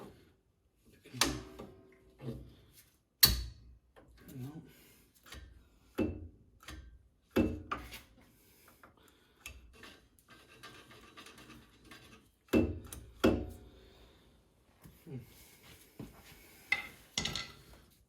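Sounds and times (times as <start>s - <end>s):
metal scraping and rubbing: 9.7s - 12.4s.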